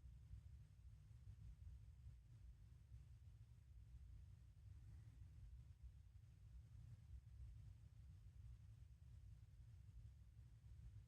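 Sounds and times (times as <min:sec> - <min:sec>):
faint low rumble: 0:00.0 - 0:11.0.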